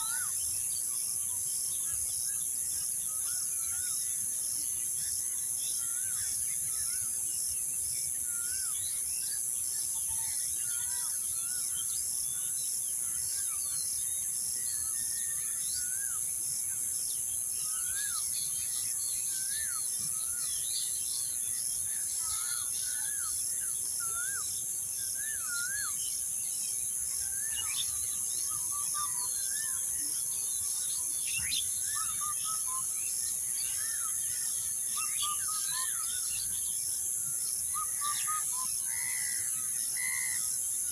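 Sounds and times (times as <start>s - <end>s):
pulsing insect chorus: 0.0s - 40.9s
birds chirping and whistling: 22.2s - 26.2s, 27.1s - 36.7s, 37.7s - 39.4s.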